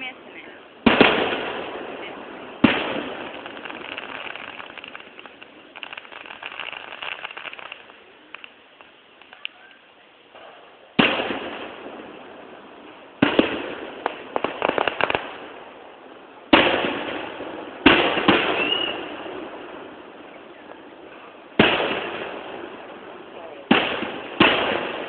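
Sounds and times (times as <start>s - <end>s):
crackling firework pops: 0.8s - 15.6s, 16.5s - 19.6s, 20.5s - 23.0s, 23.6s - 25.0s
firework shell bursts: 2.6s - 11.7s, 17.9s - 19.1s.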